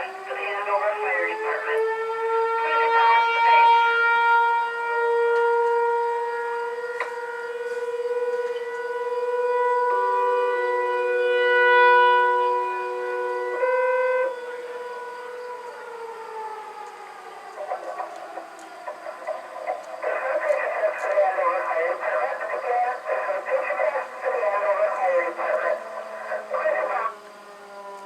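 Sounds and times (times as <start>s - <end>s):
fire siren wailing: 0.0s - 28.0s
radio paging tones: 17.6s - 27.2s.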